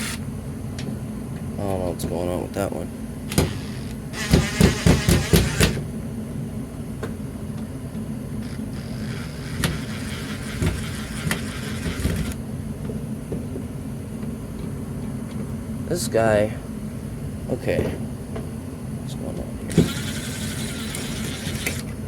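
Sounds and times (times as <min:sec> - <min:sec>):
cordless drill running: 0:00.0 - 0:00.2, 0:03.3 - 0:05.8, 0:08.4 - 0:12.4, 0:19.7 - 0:22.0.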